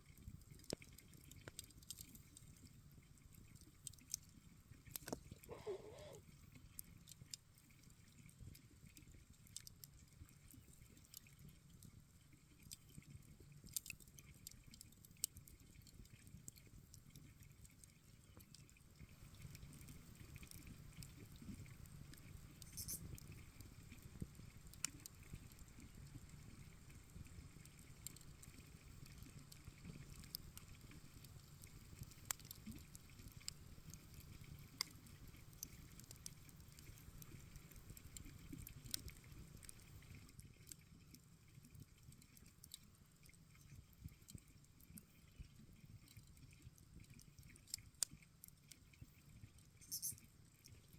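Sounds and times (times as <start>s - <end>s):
campfire crackling: 19.3s - 40.8s.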